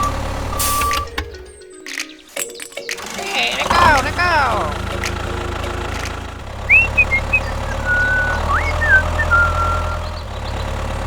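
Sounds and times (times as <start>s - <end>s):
high whistle: 0.0s - 1.2s, 6.7s - 10.1s
engine idling: 0.0s - 1.4s, 3.0s - 11.0s.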